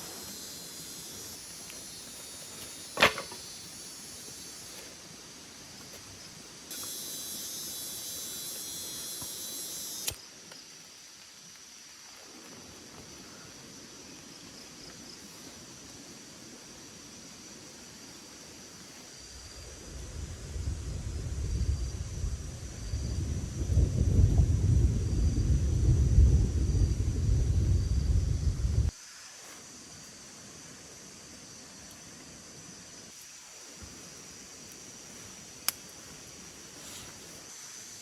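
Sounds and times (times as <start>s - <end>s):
high insect-like tones: 0.0s - 13.1s
steady hiss: 0.0s - 24.2s, 26.6s - 38.0s.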